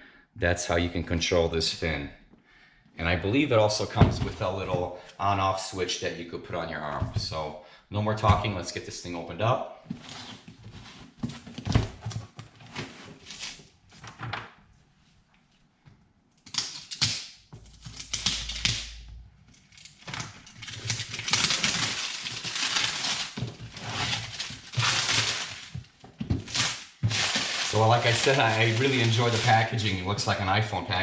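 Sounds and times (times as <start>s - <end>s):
box and packaging being handled: 9.8s - 14.4s, 19.6s - 30.4s
packaging rustling and tearing: 19.6s - 30.1s.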